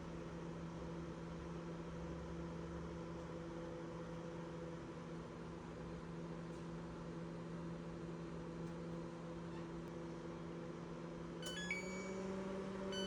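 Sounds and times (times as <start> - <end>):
microwave oven humming: 0.0 - 13.0
stepped electronic tones: 11.4 - 12.3.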